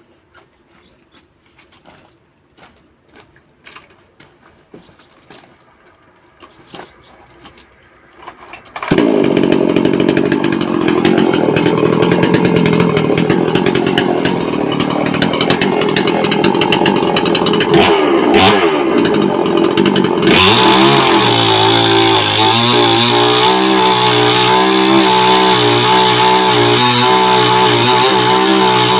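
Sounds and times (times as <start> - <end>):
chainsaw running and revving: 7.5 - 28.9.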